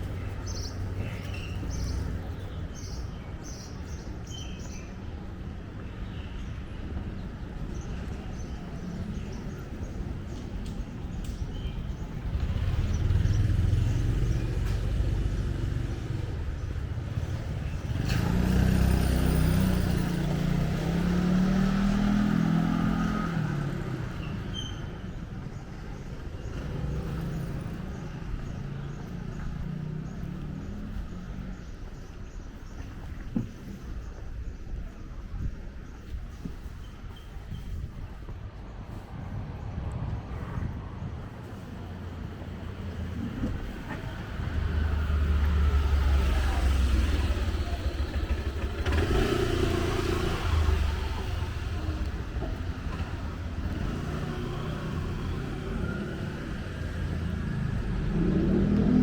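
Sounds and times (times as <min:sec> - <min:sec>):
street traffic rumble: 0:00.0 - 0:59.0
vehicle passing by: 0:12.1 - 0:24.4, 0:26.2 - 0:31.7, 0:38.7 - 0:59.0.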